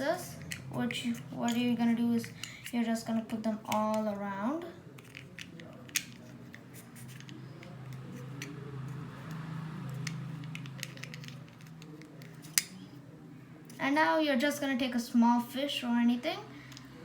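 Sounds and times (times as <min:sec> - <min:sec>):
plastic bricks clicking: 0:09.9 - 0:12.7.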